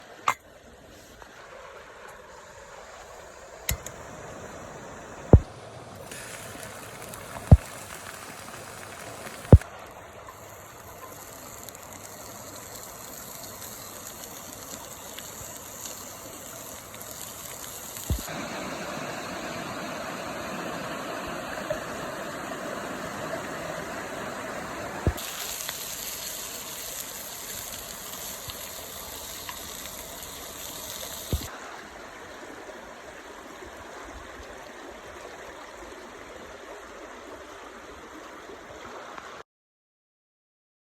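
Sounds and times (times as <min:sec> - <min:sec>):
stream water running: 0:00.0 - 0:39.4
sharp clicks: 0:03.7 - 0:04.0, 0:06.1 - 0:09.7, 0:10.8 - 0:18.3.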